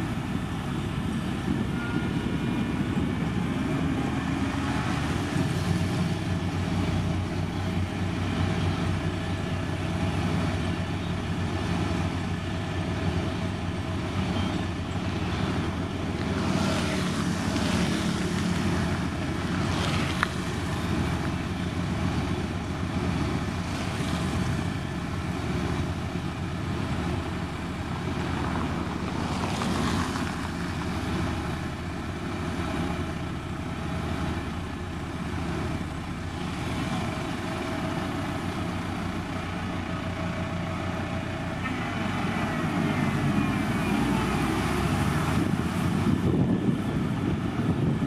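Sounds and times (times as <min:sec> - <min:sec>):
diesel engine running under load: 0:00.0 - 0:48.0.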